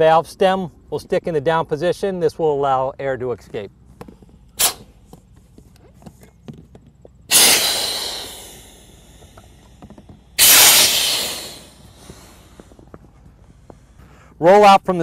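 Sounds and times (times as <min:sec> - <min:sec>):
air hissing from a valve: 0:04.6 - 0:04.9, 0:07.3 - 0:12.8.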